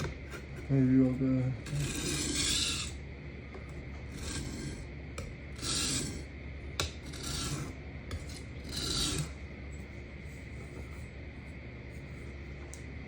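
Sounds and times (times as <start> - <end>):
knife rasping on sharpening plate: 1.6 - 3.0, 4.1 - 4.8, 5.6 - 9.4.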